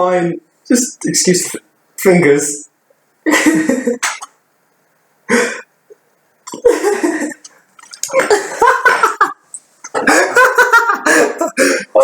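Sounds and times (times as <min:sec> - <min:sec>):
person coughing and gagging: 0:03.3 - 0:04.4, 0:06.5 - 0:07.5, 0:09.9 - 0:12.0.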